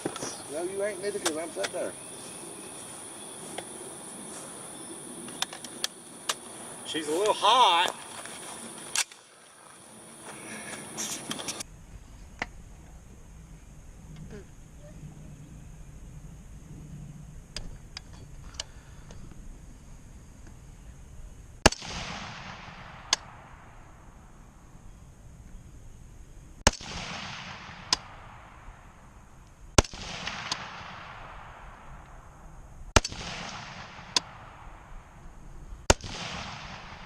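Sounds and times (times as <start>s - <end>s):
rifle shots echoing: 21.6s - 24.0s, 26.6s - 29.1s, 29.7s - 32.3s, 33.0s - 35.2s, 35.8s - 37.0s.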